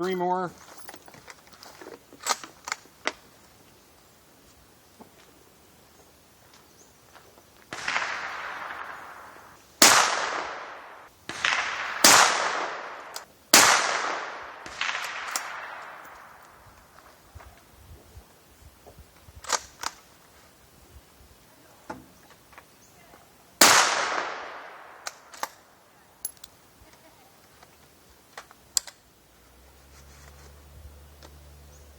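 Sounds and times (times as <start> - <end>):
rifle shots echoing: 7.7 - 16.4, 23.6 - 25.6.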